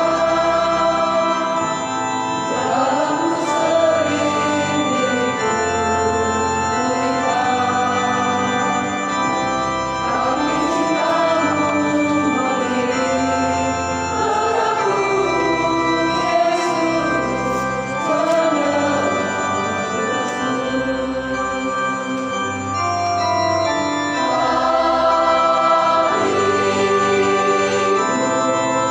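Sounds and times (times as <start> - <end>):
choir singing a hymn: 0.0 - 28.9
church organ chords: 0.0 - 28.9.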